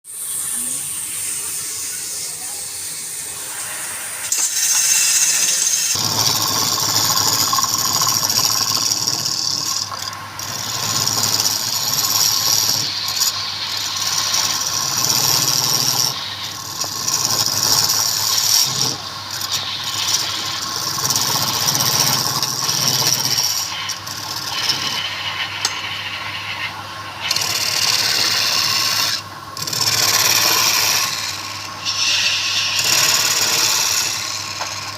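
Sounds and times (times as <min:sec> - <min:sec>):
lathe motor hum: 0:00.1 - 0:34.9
tool cutting spinning wood: 0:00.1 - 0:34.9.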